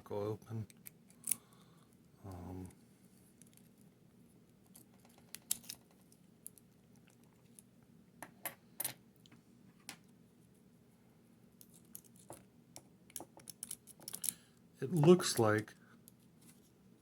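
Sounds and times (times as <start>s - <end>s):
small metallic clicks of padlock parts: 0.7s - 1.5s, 4.7s - 5.8s, 13.1s - 14.4s.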